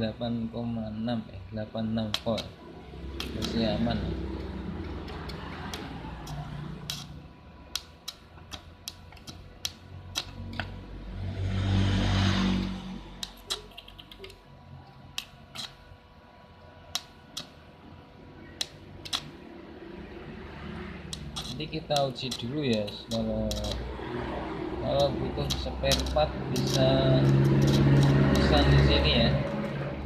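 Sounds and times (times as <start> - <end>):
small objects clicking and tapping: 4.4 - 7.1, 7.7 - 10.8, 15.1 - 15.8, 16.9 - 17.6, 18.6 - 19.4, 21.1 - 23.8, 24.9 - 28.8.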